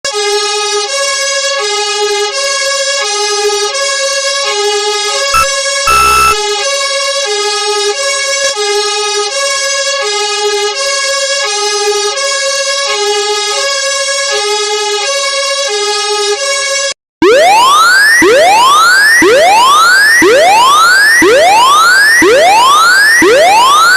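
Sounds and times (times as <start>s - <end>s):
two-tone siren: 5.4s - 6.4s, 17.2s - 23.9s.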